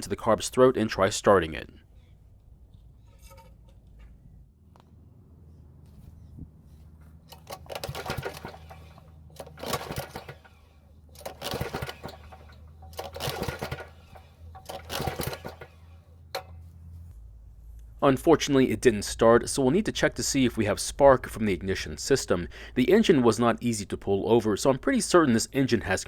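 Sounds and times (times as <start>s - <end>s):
recoil starter ratcheting rattle: 7.3s - 16.6s.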